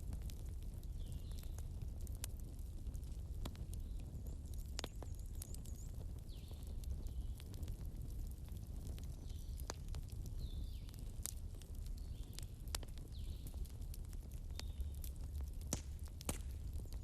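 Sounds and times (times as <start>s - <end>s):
bonfire crackling and popping: 0.0s - 17.0s
low rumble of flames: 0.0s - 17.0s.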